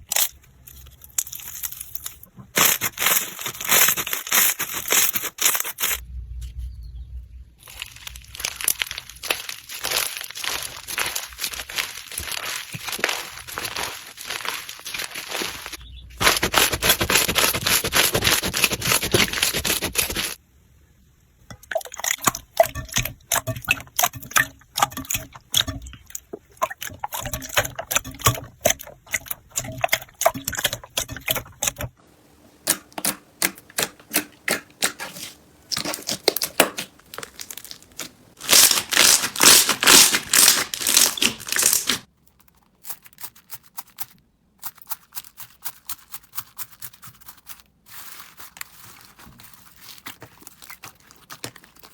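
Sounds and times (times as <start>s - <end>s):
slime crackling and clicking: 7.7s - 15.8s, 32.6s - 42.1s.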